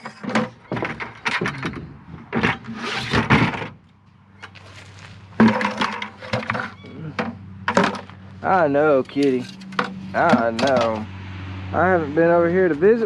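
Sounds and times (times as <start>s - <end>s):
scrap metal clanking: 0.0s - 3.8s, 4.4s - 8.2s, 8.9s - 11.1s.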